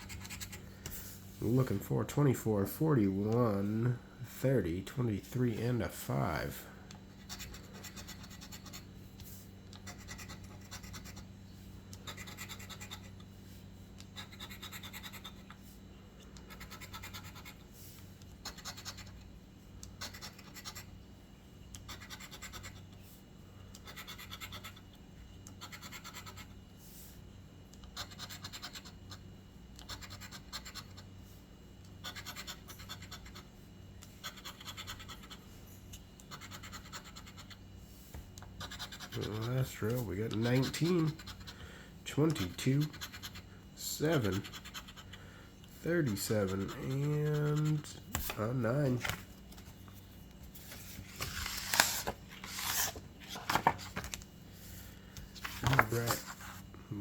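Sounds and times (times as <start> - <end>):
scratching lottery ticket: 0.0 - 0.6, 4.4 - 9.1, 9.7 - 11.3, 12.0 - 13.3, 14.0 - 15.5, 16.4 - 19.2, 19.9 - 20.9, 21.7 - 22.9, 23.8 - 24.8, 25.6 - 26.6, 27.9 - 29.2, 29.8 - 31.1, 32.0 - 33.5, 34.2 - 35.4, 36.3 - 37.6, 38.5 - 50.0, 50.6 - 54.2, 55.4 - 56.6
steady low hum: 0.0 - 57.0.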